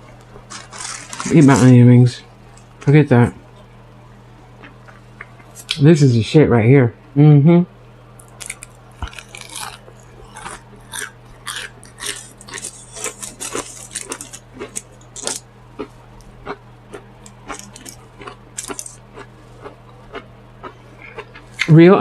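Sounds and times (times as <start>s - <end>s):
steady low hum: 0.0s - 22.0s
crunchy chewing: 0.2s - 1.8s, 8.2s - 21.8s.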